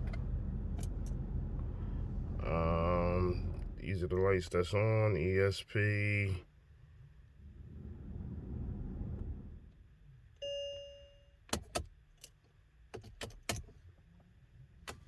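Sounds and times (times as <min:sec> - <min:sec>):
sharp clicks of car controls: 0:11.5 - 0:13.8, 0:14.8 - 0:15.0.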